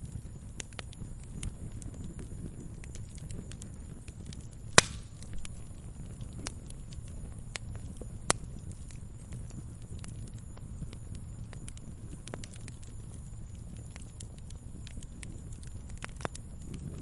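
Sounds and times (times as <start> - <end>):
wood fire crackling: 0.0 - 17.0
loud sharp pops: 4.7 - 5.3.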